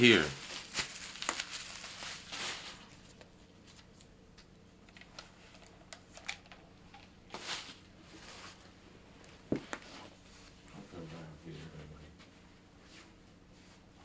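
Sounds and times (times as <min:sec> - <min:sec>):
canvas rustling: 0:00.0 - 0:03.1.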